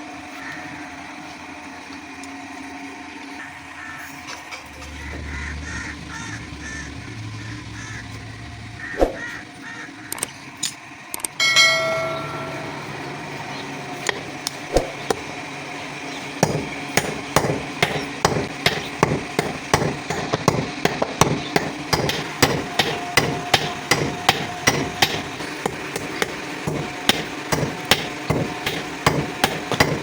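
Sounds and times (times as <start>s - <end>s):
hammer striking steel: 11.4s - 15.4s, 16.3s - 30.0s.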